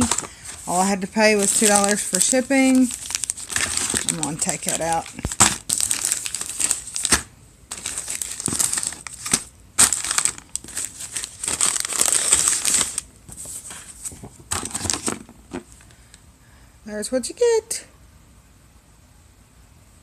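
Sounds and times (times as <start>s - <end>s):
plastic packaging crinkling: 0.0s - 15.6s.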